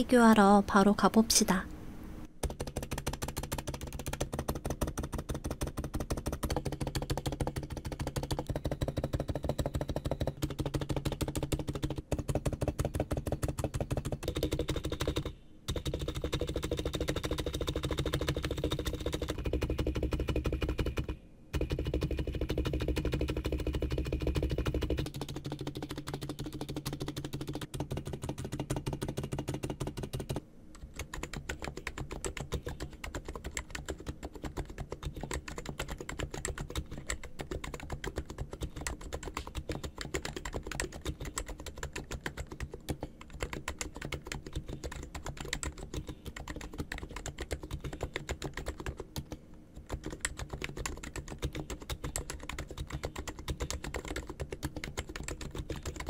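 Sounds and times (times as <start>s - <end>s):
fast keyboard typing clicks: 2.4s - 56.0s.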